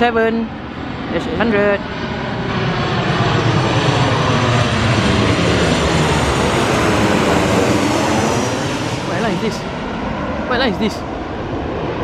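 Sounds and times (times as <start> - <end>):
jet engine rush: 0.0 - 12.0.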